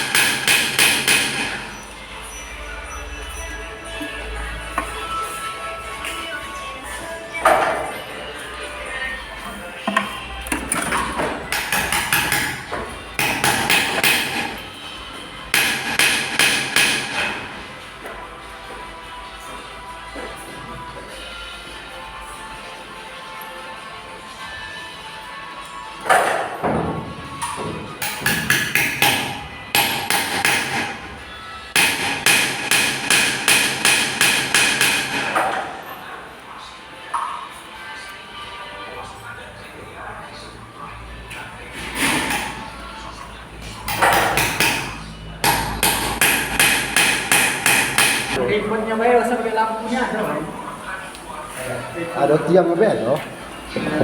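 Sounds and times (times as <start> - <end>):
hammer striking metal: 0.0 - 1.8, 9.9 - 14.7, 15.5 - 17.4, 28.0 - 31.1, 31.7 - 35.6, 43.8 - 48.4.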